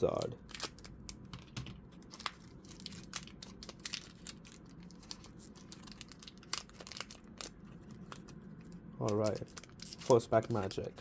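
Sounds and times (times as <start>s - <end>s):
foil wrapper crinkling and tearing: 0.0s - 11.0s.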